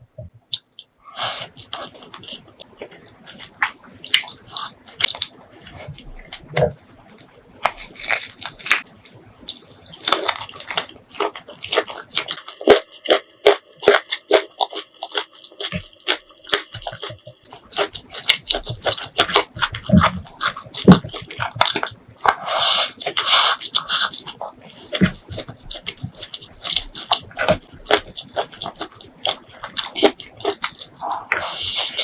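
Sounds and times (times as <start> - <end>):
wet chewing and lip-smacking: 0.2 - 32.0
noisy slurping: 9.5 - 32.0.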